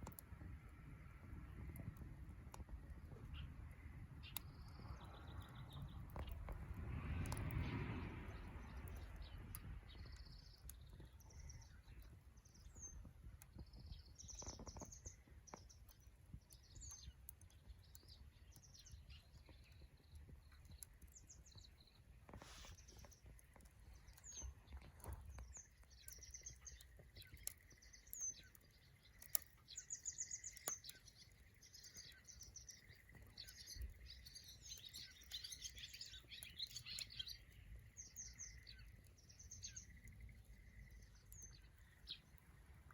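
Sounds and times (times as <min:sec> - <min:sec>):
faint sharp clicks: 0:00.0 - 0:00.8, 0:01.6 - 0:42.9
small birds chirping: 0:00.0 - 0:42.9.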